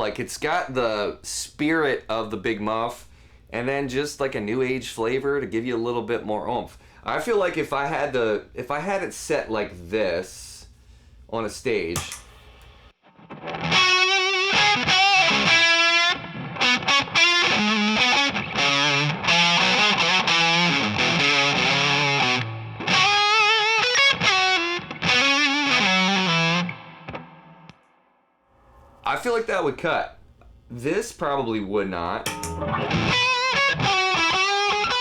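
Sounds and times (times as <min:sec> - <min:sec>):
fuzz electric guitar riff: 0:13.2 - 0:27.7, 0:32.3 - 0:35.0.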